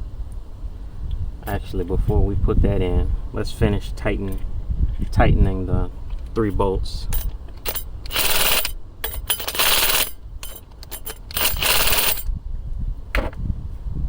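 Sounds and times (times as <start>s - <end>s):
wrench ratcheting: 7.1s - 12.3s.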